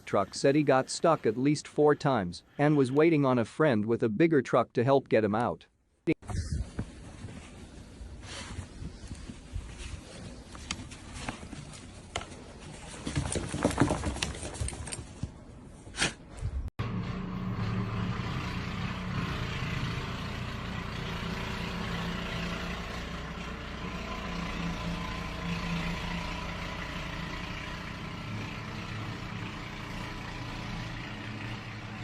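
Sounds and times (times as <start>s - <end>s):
vehicle engine running: 16.8s - 32.0s.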